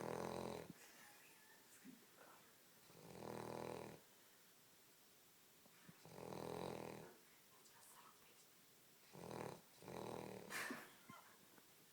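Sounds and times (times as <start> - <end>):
dog snoring: 0.0 - 0.8, 2.8 - 4.0, 6.0 - 7.2, 9.1 - 10.6.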